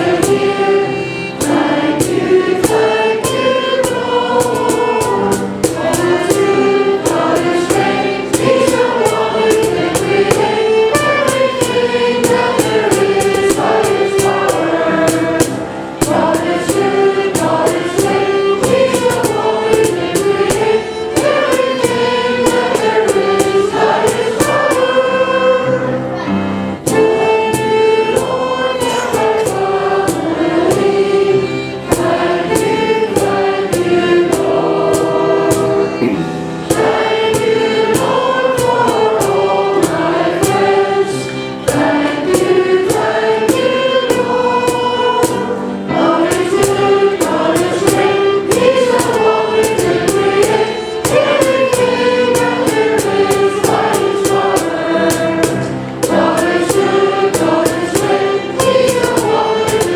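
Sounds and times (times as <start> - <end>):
group singing worship song: 0.0 - 59.9
instrumental accompaniment with beat: 0.0 - 59.9.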